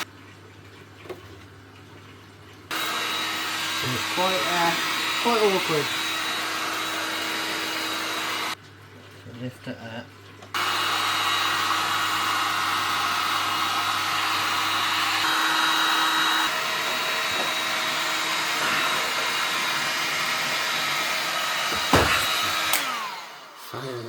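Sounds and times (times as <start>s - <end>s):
hot-air blower running: 2.7s - 8.6s, 10.6s - 23.9s
sharp knock: 21.7s - 22.6s.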